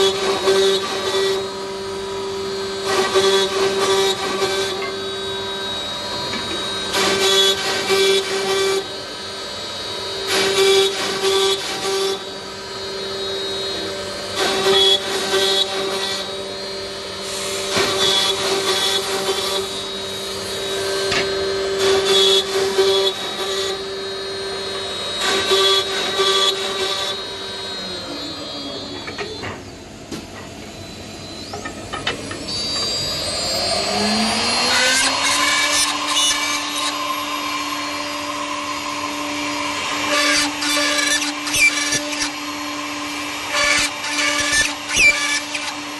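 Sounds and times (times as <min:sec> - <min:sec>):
machine spindles whining: 0:00.0 - 0:45.9
bits cutting wood: 0:33.8 - 0:37.8, 0:39.3 - 0:42.5, 0:43.3 - 0:45.9.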